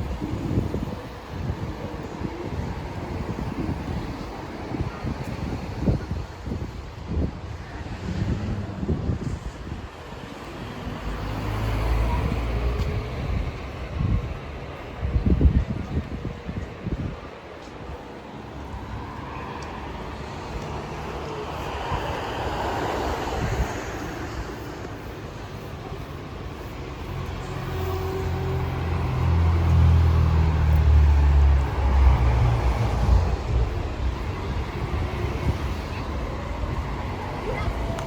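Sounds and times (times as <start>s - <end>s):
engine rumbling close by: 18.5s - 38.0s
vehicle passing: 26.7s - 38.0s.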